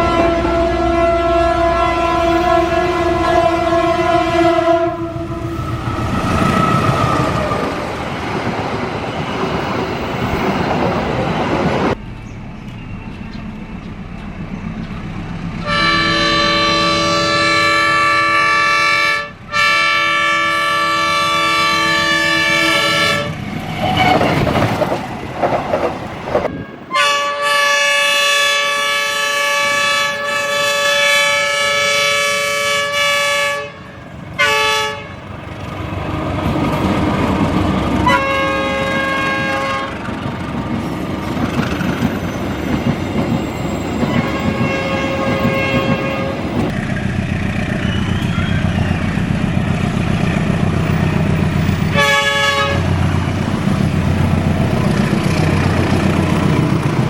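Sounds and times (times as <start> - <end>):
locomotive air horn blasts: 0.0 - 7.3, 15.6 - 24.2, 26.5 - 35.3, 38.0 - 40.1, 44.0 - 46.7, 51.9 - 53.0
train rumbling by: 0.0 - 57.0
rail wheels clattering: 21.6 - 26.9, 35.2 - 57.0.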